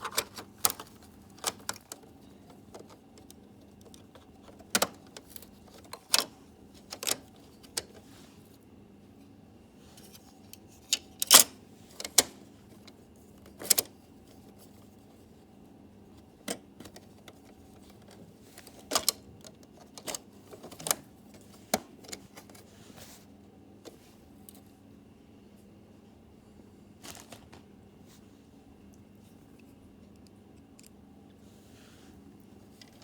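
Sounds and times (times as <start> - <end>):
keyboard and tool clicks: 0.0 - 6.3
faint steady hum: 0.0 - 33.0.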